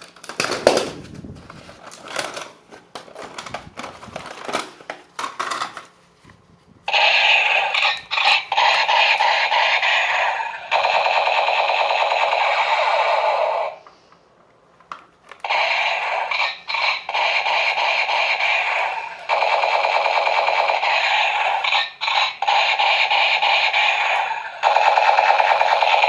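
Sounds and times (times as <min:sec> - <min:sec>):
toy gun machine-gun sound: 0:00.3 - 0:01.0, 0:06.9 - 0:13.8, 0:15.4 - 0:26.0.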